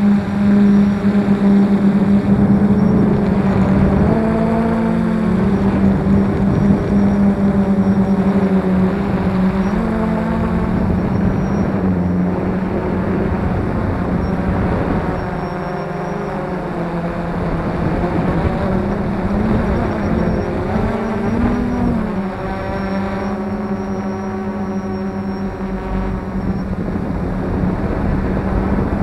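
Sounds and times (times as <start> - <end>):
quadcopter motors humming: 0.0 - 29.0.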